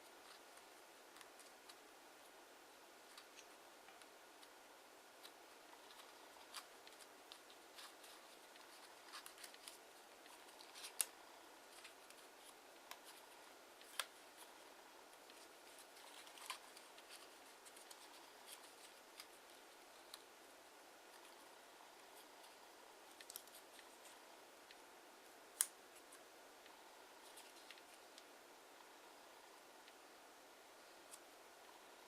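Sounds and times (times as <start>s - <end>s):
paper crinkling while folded: 5.2s - 20.2s.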